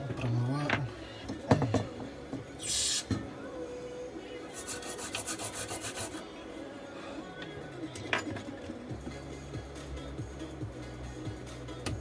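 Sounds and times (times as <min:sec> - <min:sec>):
short hiss: 0:02.6 - 0:03.1
stiff brush scrubbing circuit board: 0:04.5 - 0:06.2.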